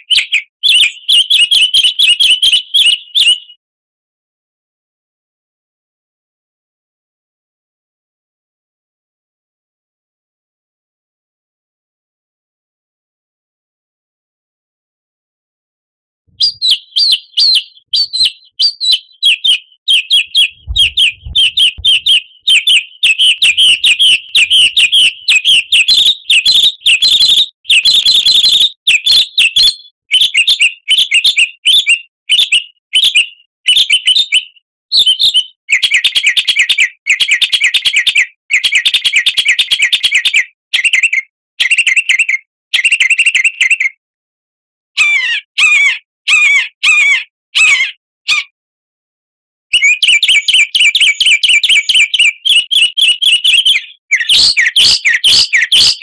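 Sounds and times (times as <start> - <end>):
songbird chirping and trilling: 0.0 - 3.6, 16.4 - 44.0, 45.0 - 48.5, 49.8 - 56.0.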